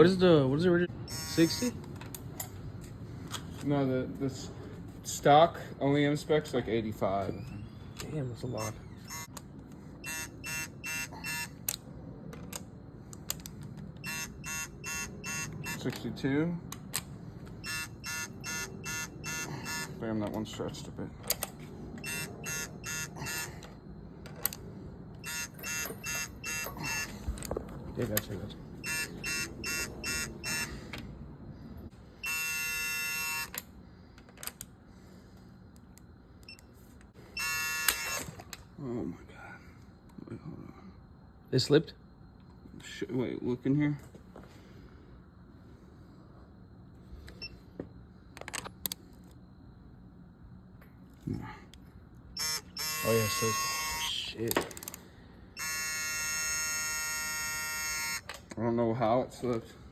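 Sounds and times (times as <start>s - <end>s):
torque wrench buzzer: 1.1s - 1.8s, 8.6s - 9.4s, 10.0s - 11.7s, 14.0s - 15.8s, 17.6s - 20.0s, 22.0s - 23.8s, 25.2s - 27.4s, 28.8s - 30.9s, 32.2s - 33.6s, 37.3s - 38.4s, 52.4s - 54.2s, 55.6s - 58.4s.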